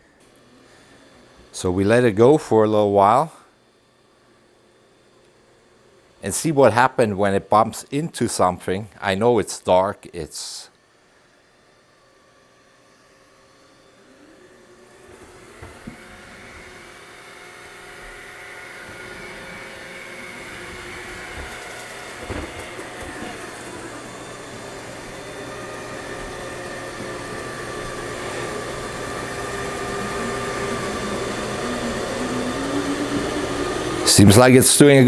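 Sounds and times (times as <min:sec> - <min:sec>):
robot vacuum whirring: 0:11.2 - 0:35.0.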